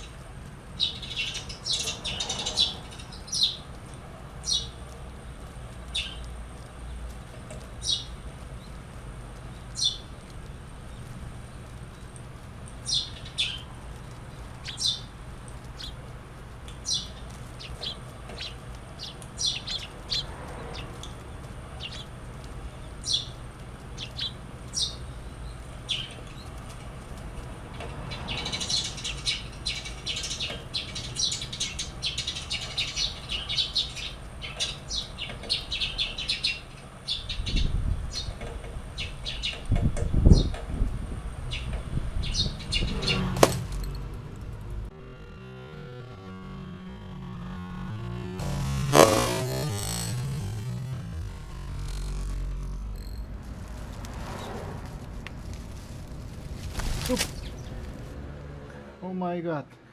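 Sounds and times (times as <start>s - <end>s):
small bird chirping: 0.8s - 3.7s, 5.9s - 6.3s, 9.5s - 10.1s, 12.8s - 13.7s, 14.3s - 15.1s, 16.7s - 22.1s, 22.7s - 23.4s, 24.0s - 26.5s, 28.3s - 38.4s, 56.8s - 57.8s
low thumps: 44.9s - 55.4s
wing fluttering: 47.8s - 58.1s.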